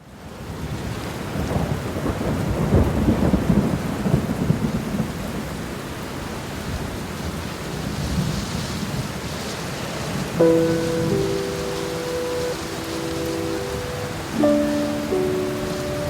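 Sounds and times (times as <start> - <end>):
rain hissing: 5.9 - 16.0
thunder rumbling: 10.2 - 16.0.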